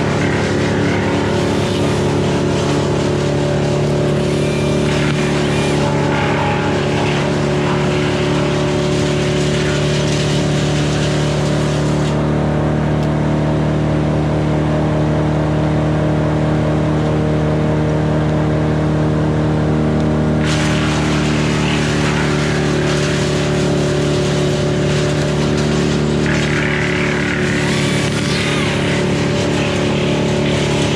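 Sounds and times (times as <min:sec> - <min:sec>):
motor humming: 0:00.0 - 0:12.3, 0:20.4 - 0:30.9.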